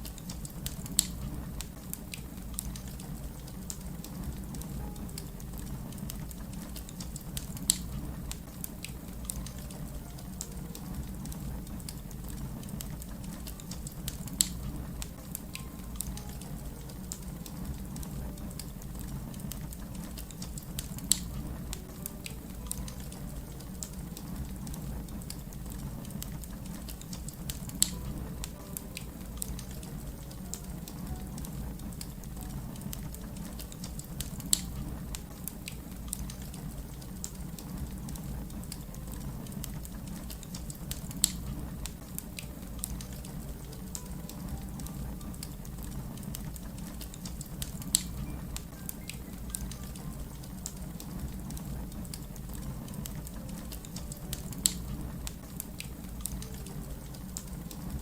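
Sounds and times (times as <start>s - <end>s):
wood fire crackling: 0.0s - 58.0s
loud fire pops: 0.3s - 10.0s, 31.0s - 43.4s.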